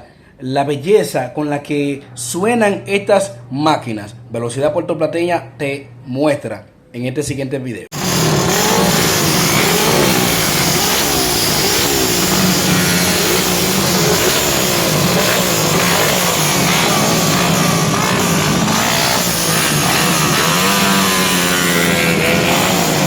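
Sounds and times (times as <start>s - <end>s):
motorcycle engines revving: 7.9s - 23.0s.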